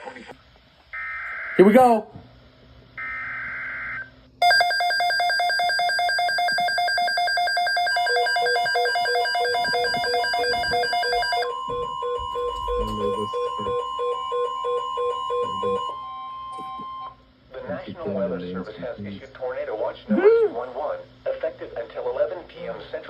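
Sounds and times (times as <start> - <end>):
steady alert tone: 4.4 - 16.0
fast-pulsing alarm tones: 4.4 - 16.3
low beeping: 6.3 - 17.1.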